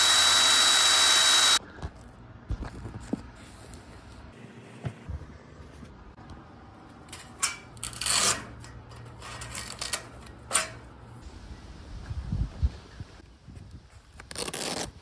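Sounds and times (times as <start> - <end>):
velcro ripping: 14.2 - 15.0.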